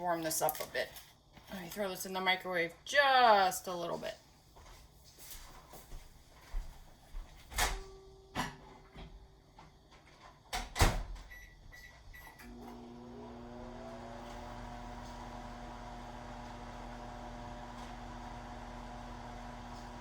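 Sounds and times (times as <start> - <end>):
microwave oven humming: 11.3 - 20.0.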